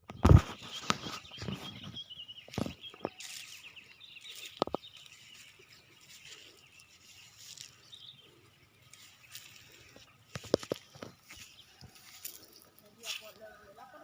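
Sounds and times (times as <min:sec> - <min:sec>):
faint bird chirps: 0:00.0 - 0:14.0
rustling in undergrowth: 0:00.2 - 0:14.0.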